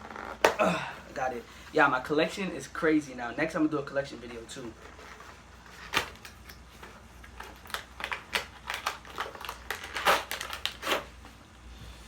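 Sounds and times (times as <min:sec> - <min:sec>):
packaging crinkling and ripping: 0:04.7 - 0:11.2.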